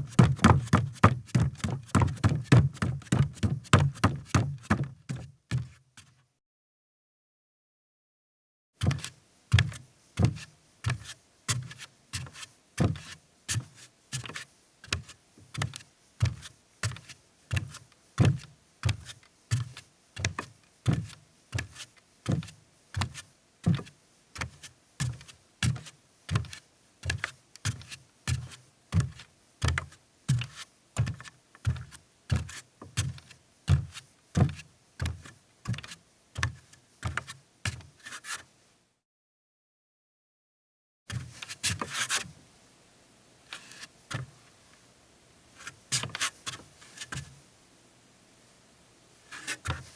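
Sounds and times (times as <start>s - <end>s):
bare footsteps on a deck: 0.0s - 5.7s.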